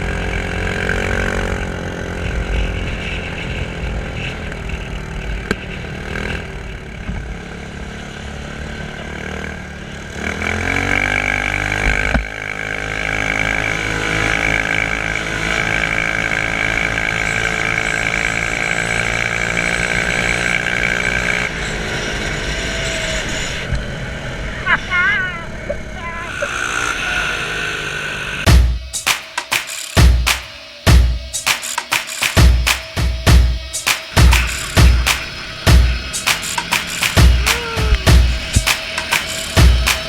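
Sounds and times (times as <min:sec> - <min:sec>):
quad bike engine revving: 0:00.0 - 0:28.5, 0:34.1 - 0:40.0.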